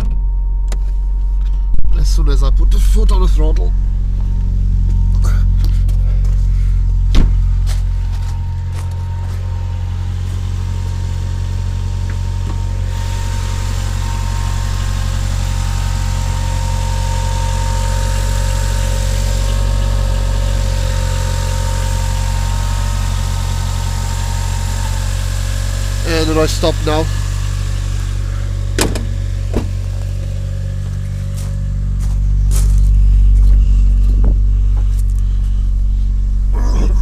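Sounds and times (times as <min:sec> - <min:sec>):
car engine idling: 0:00.0 - 0:37.0
thin electric whine: 0:07.0 - 0:25.6.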